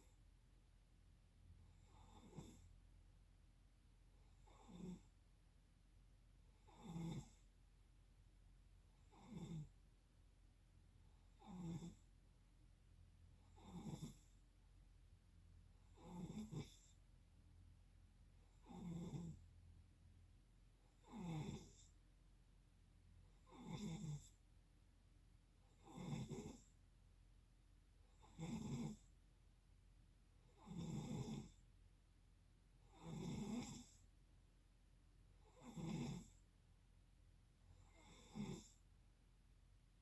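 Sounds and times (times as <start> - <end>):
faint rasping snoring: 1.6 - 2.9, 4.2 - 5.3, 6.6 - 7.6, 8.9 - 9.8, 11.1 - 12.2, 13.3 - 14.4, 15.7 - 17.1, 18.4 - 19.6, 20.8 - 22.0, 23.2 - 24.4, 25.6 - 26.8, 28.0 - 29.2, 30.4 - 31.7, 32.8 - 34.1, 35.3 - 36.5, 37.6 - 38.9.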